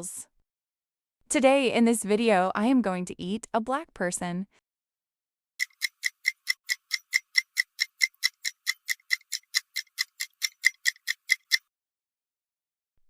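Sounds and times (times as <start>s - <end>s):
fast sharp ticking: 5.6s - 11.6s.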